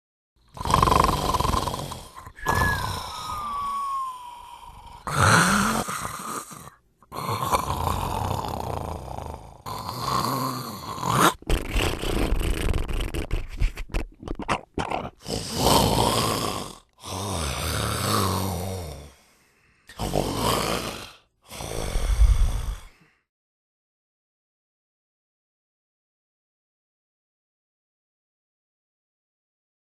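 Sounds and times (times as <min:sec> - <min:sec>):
person snoring: 0:00.5 - 0:13.4, 0:14.8 - 0:19.3, 0:19.9 - 0:23.3.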